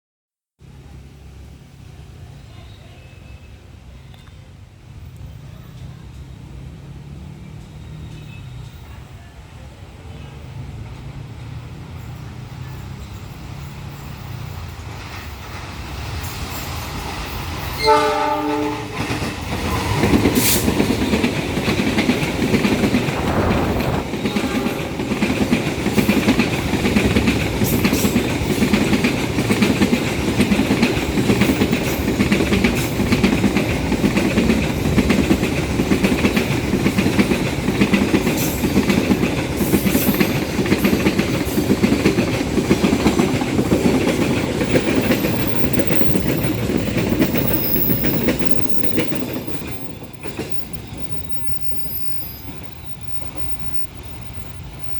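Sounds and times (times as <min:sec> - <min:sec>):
train wheels clickety-clack: 0:10.5 - 0:54.9
train horn blast: 0:17.8 - 0:19.2, 0:23.2 - 0:25.4.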